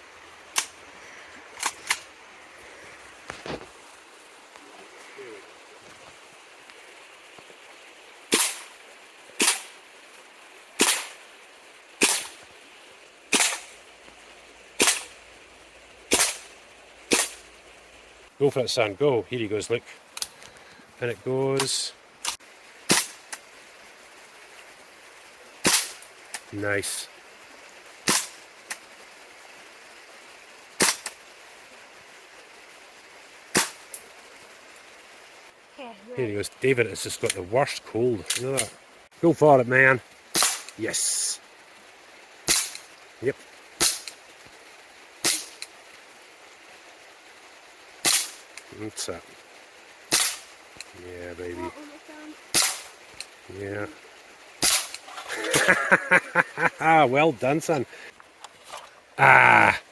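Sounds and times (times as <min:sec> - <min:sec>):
airsoft gun shots: 0:08.3 - 0:08.7, 0:09.4 - 0:09.8, 0:10.8 - 0:11.2, 0:12.0 - 0:12.4, 0:13.3 - 0:13.8, 0:14.8 - 0:15.2, 0:16.1 - 0:16.5, 0:17.1 - 0:17.4, 0:22.9 - 0:23.2, 0:25.6 - 0:26.0, 0:28.1 - 0:28.4, 0:30.8 - 0:31.1, 0:33.5 - 0:33.8, 0:40.4 - 0:40.8, 0:45.2 - 0:45.6, 0:48.0 - 0:48.4, 0:50.1 - 0:50.5, 0:52.5 - 0:52.9, 0:54.6 - 0:55.0.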